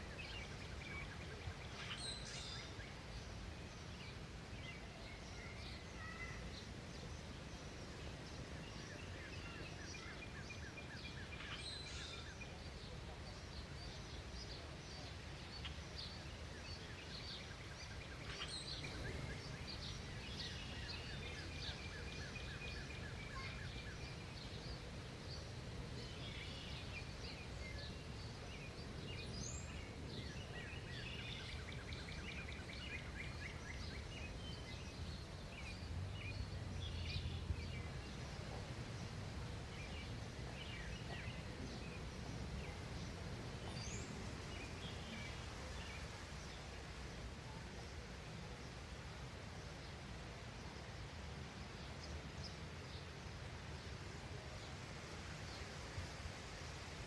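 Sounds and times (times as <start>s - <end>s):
birds chirping and trilling: 15.5s - 46.1s.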